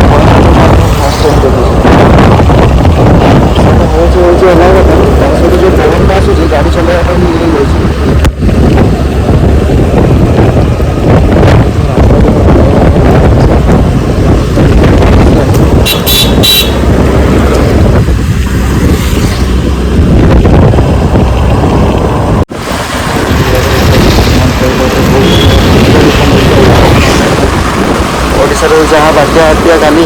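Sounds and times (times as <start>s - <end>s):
road traffic: 0.0s - 30.0s
wind buffeting microphone: 0.0s - 30.0s
vehicle horn toot: 15.8s - 16.8s, 25.2s - 25.9s.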